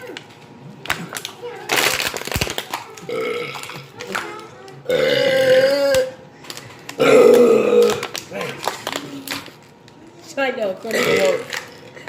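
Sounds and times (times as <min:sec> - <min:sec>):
person burping: 0:03.1 - 0:03.9, 0:04.8 - 0:06.2, 0:07.0 - 0:08.6, 0:10.9 - 0:11.6.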